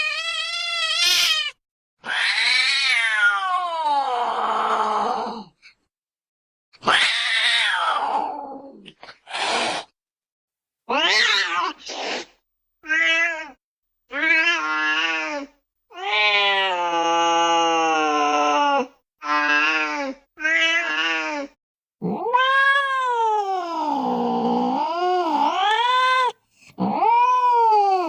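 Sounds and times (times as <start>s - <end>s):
cat meowing: 0.0s - 4.1s, 6.8s - 8.6s, 10.9s - 11.8s, 12.8s - 23.8s.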